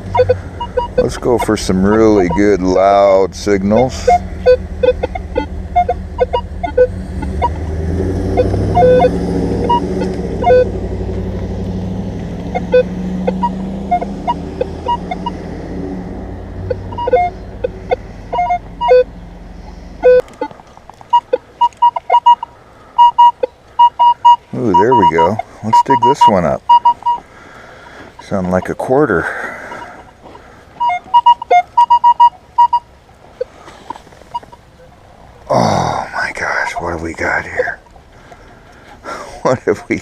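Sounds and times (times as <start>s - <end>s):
metal detector beeps: 0.0s - 7.7s, 8.3s - 10.8s, 12.5s - 15.4s, 16.6s - 19.1s, 20.0s - 27.2s, 30.8s - 33.5s, 34.3s - 34.6s
low engine rumble: 0.0s - 40.0s.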